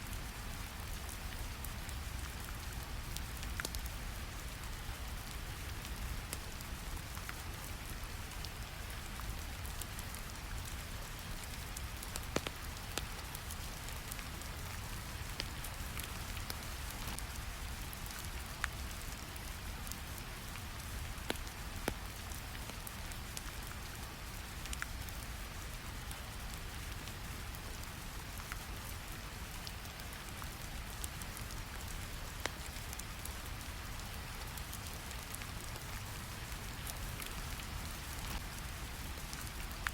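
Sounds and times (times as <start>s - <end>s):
rain falling: 0.0s - 39.9s
small clicks and pops: 12.1s - 13.1s.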